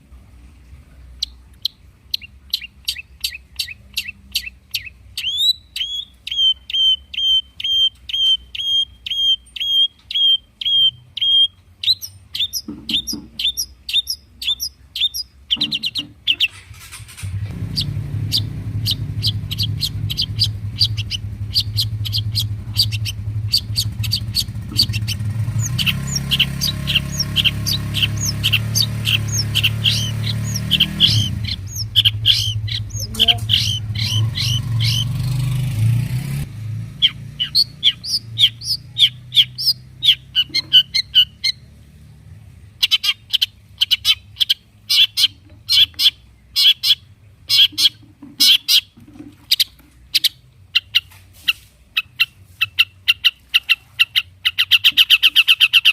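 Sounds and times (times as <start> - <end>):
low steady hum: 0.0 - 50.7
shrike singing sharp calls: 1.2 - 41.7.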